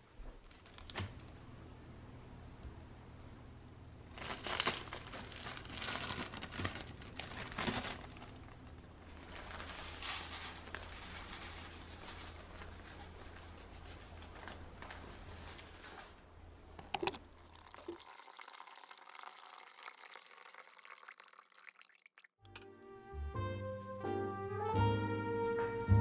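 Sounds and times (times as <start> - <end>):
low steady hum: 0.0 - 18.4
packaging crinkling and rustling: 0.4 - 1.3, 4.1 - 16.3.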